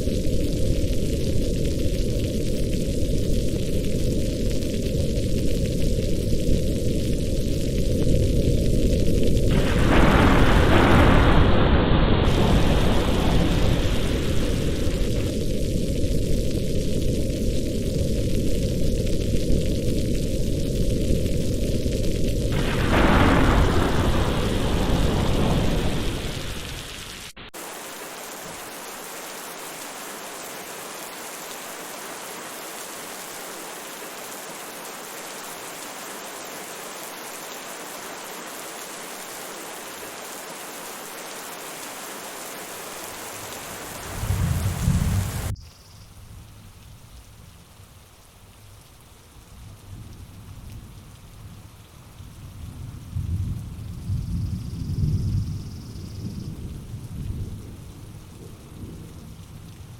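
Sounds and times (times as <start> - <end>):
thunder rumbling: 0.0 - 27.3, 43.2 - 45.6, 52.4 - 59.9
heavy rain falling: 0.0 - 59.9.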